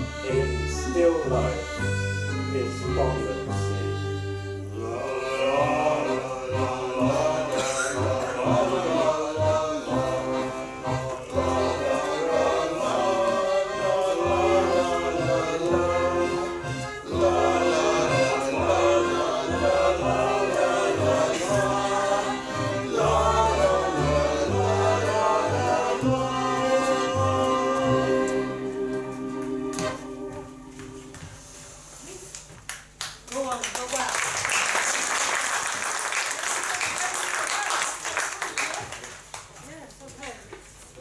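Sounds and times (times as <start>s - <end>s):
instrumental accompaniment: 0.0s - 31.6s
group singing a song: 4.7s - 31.2s.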